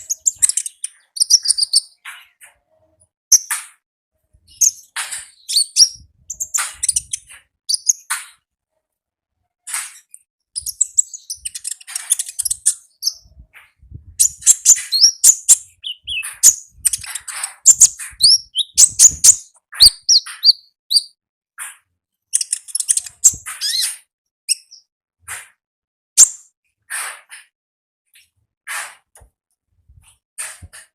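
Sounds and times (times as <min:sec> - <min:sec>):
songbird chirping and trilling: 0:00.0 - 0:02.5, 0:04.5 - 0:08.4, 0:10.0 - 0:13.5, 0:14.2 - 0:21.2, 0:22.4 - 0:24.9.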